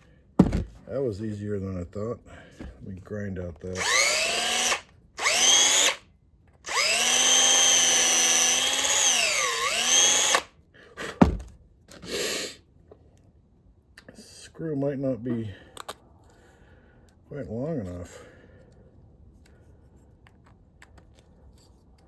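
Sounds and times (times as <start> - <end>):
cordless drill grinding plastic: 3.7 - 6.0, 6.6 - 10.5.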